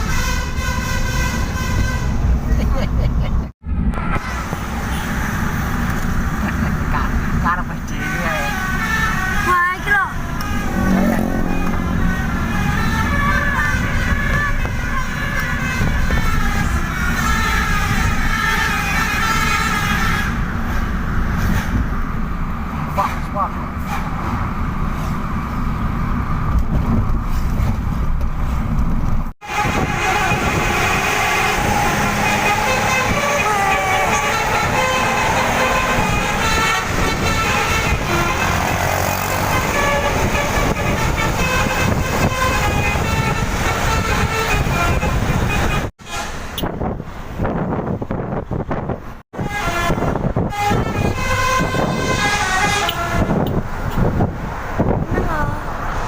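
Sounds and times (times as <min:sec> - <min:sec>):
bus horn tooting a tune: 0:00.0 - 0:02.4, 0:07.8 - 0:20.6, 0:29.4 - 0:46.9, 0:49.3 - 0:54.1
road and engine rumble: 0:00.0 - 0:56.0
wind noise: 0:10.2 - 0:22.9, 0:23.6 - 0:56.0.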